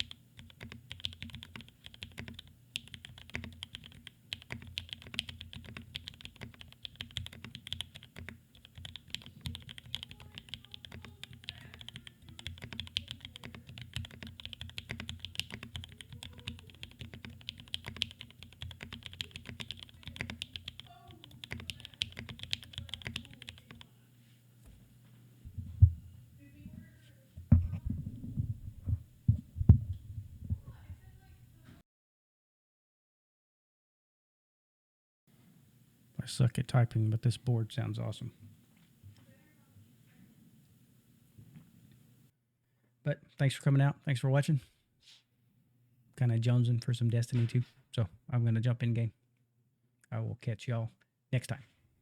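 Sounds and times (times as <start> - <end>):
typing on mechanical keyboard: 0.0 - 23.9.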